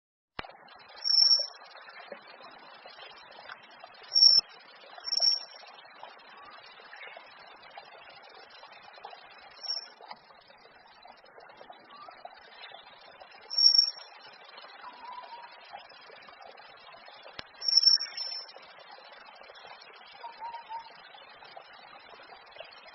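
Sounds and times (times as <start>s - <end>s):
high-pitched whistled bird notes: 1.0s - 1.5s, 4.1s - 4.4s, 5.0s - 5.5s, 9.6s - 9.9s, 13.5s - 14.0s, 14.8s - 15.6s, 17.6s - 18.5s, 20.2s - 20.9s
faint bird chatter: 9.5s - 10.0s, 11.4s - 15.8s, 17.1s - 18.6s, 19.6s - 21.1s.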